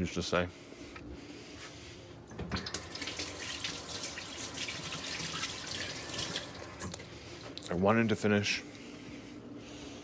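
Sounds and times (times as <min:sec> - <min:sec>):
tap water running into sink: 0:02.4 - 0:07.0.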